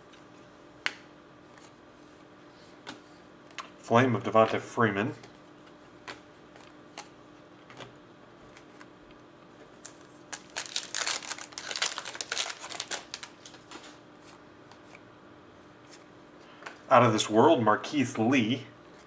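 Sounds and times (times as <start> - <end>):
plastic wrapping crinkling: 9.8 - 14.0.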